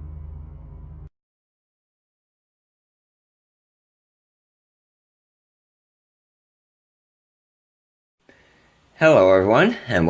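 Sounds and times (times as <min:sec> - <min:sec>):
intro music: 0:00.0 - 0:01.1.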